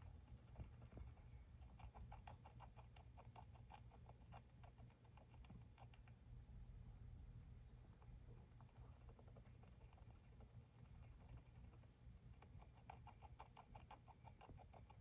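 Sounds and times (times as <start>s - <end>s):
low steady hum: 0.0s - 15.0s
hamster teeth grinding clicks: 1.6s - 6.2s, 12.4s - 15.0s.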